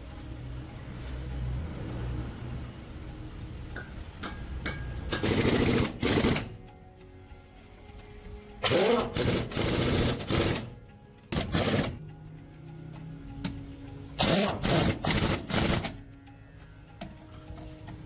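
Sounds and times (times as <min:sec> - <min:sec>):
pneumatic impact wrench hammering: 0:04.2 - 0:06.5, 0:08.6 - 0:10.7, 0:11.3 - 0:12.0, 0:14.2 - 0:16.0.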